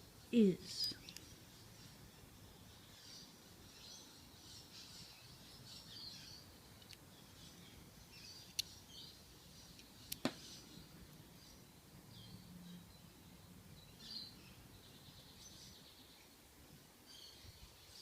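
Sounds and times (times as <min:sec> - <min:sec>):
faint birds chirping: 0:00.0 - 0:18.0.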